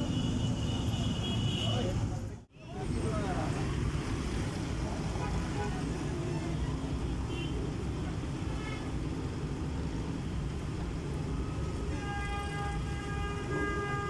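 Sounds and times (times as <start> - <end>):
vehicle horn: 0.0 - 2.0, 11.9 - 14.0
road traffic rumble: 0.0 - 14.0.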